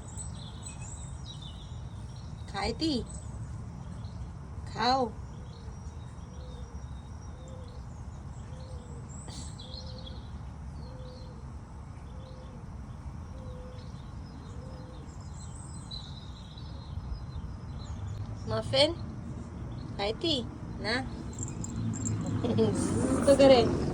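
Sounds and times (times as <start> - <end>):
low background rumble: 0.0 - 23.9
small birds chirping: 0.0 - 23.9
bird hooting: 13.3 - 13.8.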